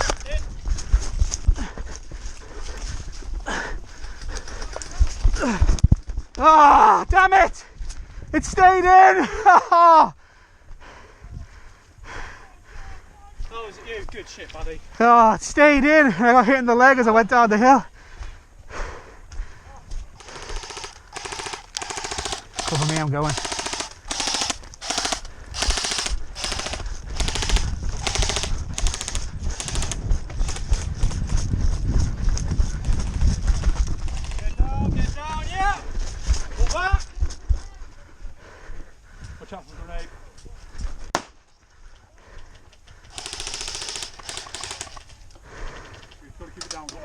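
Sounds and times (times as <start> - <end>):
airsoft guns firing bursts: 20.2 - 31.2, 34.0 - 34.6, 43.1 - 45.2
sharp crack: 41.2 - 41.4.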